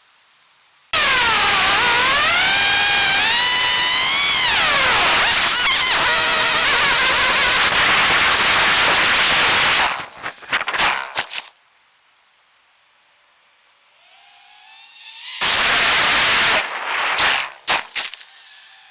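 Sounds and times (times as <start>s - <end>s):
quadcopter motors whining: 1.0s - 10.7s.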